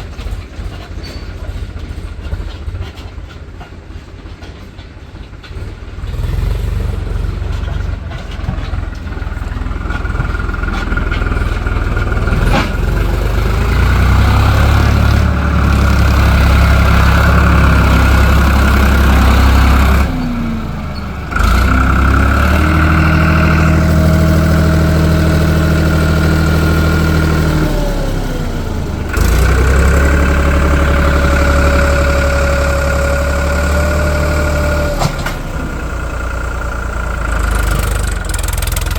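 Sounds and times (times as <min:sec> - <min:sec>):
diesel engine running under load: 0:00.0 - 0:38.9.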